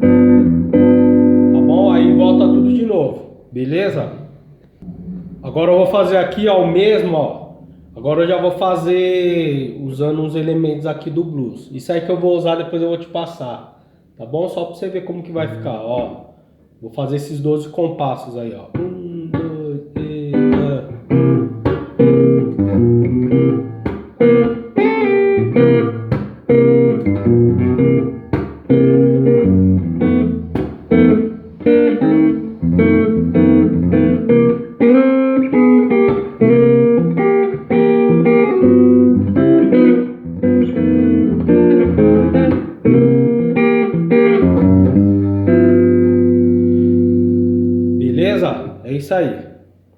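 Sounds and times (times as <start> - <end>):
blues guitar playing: 0.0 - 3.2, 18.7 - 48.8.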